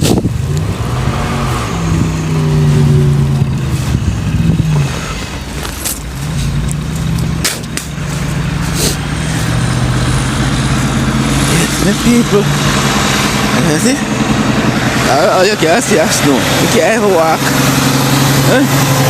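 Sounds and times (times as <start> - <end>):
vehicle engine revving: 0.0 - 19.0.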